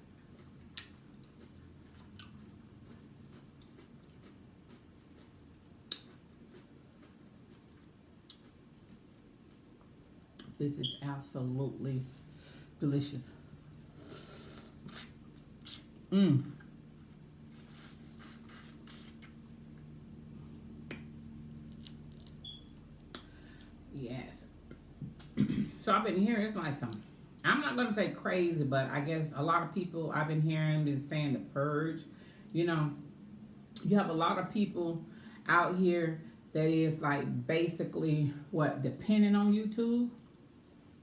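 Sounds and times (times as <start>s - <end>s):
person chewing food: 0.0s - 10.6s, 13.5s - 23.8s
faint steady hum: 0.0s - 41.0s.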